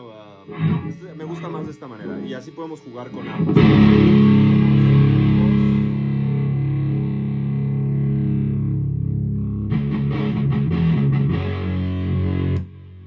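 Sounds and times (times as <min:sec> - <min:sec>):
electric guitar notes picked: 0:00.0 - 0:02.5, 0:03.1 - 0:13.0
fuzzy electric guitar chord: 0:03.2 - 0:13.0.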